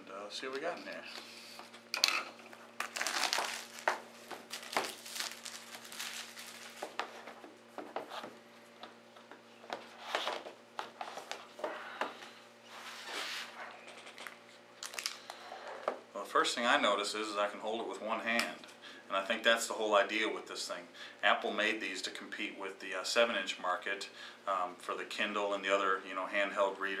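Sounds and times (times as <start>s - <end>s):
plastic shrink-wrap tearing: 2.8s - 7.0s, 14.8s - 15.2s.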